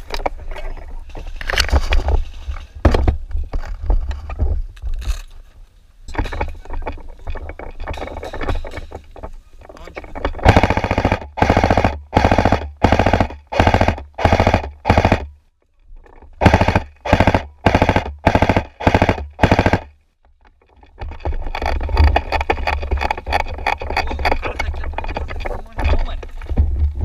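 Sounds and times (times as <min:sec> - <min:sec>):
quiet continuous rattling: 0:00.0 - 0:27.0
airsoft rifle full-auto bursts: 0:10.4 - 0:15.4, 0:16.4 - 0:20.0.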